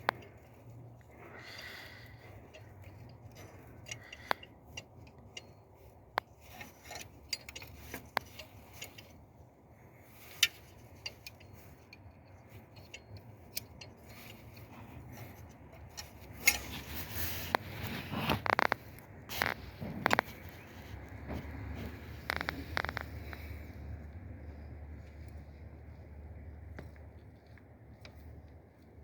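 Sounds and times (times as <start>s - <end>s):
hand tools clicking and tapping: 0.0s - 17.7s
low steady hum: 0.0s - 29.0s.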